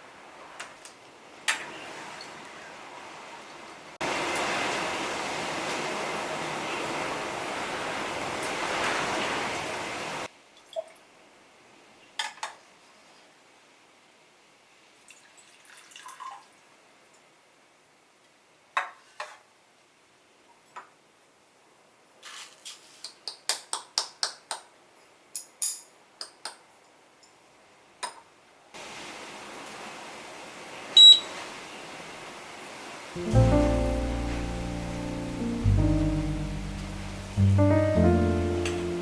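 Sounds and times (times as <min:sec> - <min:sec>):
steady hiss: 0:28.8 - 0:39.0
short electronic beep: 0:31.0 - 0:31.3.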